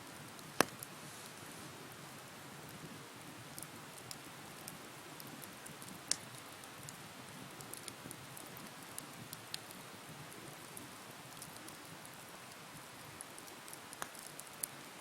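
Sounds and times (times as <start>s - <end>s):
bonfire crackling: 0.0s - 15.0s
sharp pops of burning wood: 0.6s - 0.9s, 5.3s - 7.0s, 13.3s - 14.7s.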